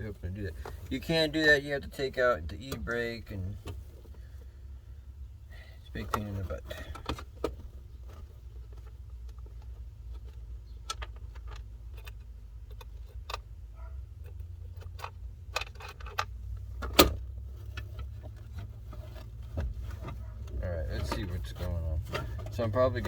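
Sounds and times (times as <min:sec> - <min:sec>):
steady low hum: 0:00.0 - 0:23.0
tools clicking and rattling: 0:06.0 - 0:23.0.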